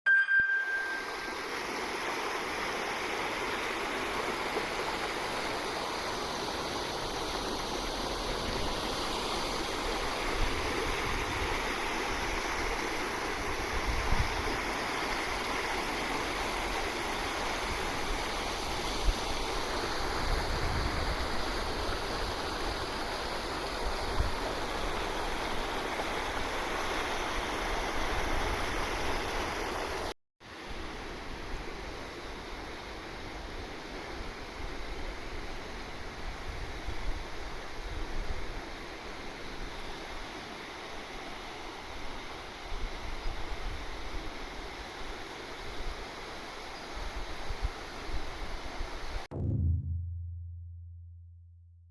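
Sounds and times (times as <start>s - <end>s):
river water rushing: 0.7s - 30.1s
low thumps: 49.3s - 51.8s.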